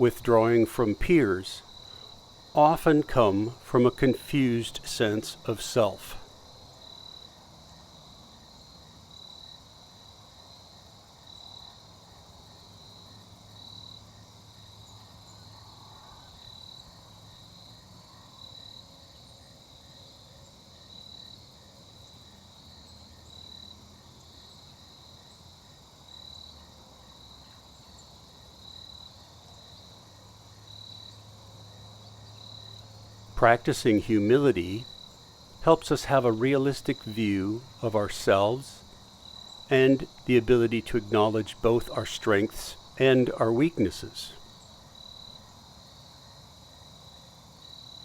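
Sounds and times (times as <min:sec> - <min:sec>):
soft background swells: 0:00.0 - 0:06.3, 0:33.4 - 0:35.0, 0:35.6 - 0:38.9, 0:39.7 - 0:44.4
crickets chirping: 0:00.0 - 0:48.0
faint low hum: 0:32.6 - 0:44.6.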